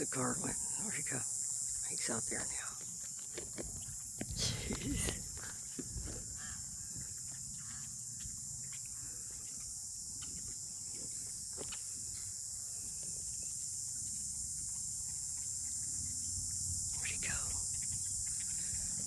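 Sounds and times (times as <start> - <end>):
high-pitched insect chorus: 0.0 - 19.0
wind rumble on microphone: 3.6 - 6.6.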